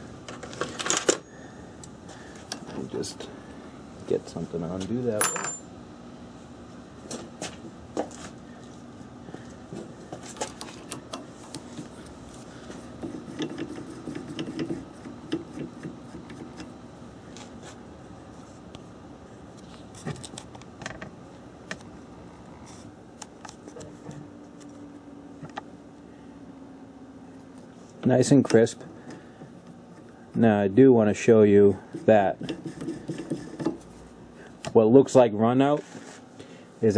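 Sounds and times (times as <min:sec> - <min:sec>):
steady low hum: 0:00.0 - 0:36.9
metal parts clinking: 0:05.2 - 0:05.7.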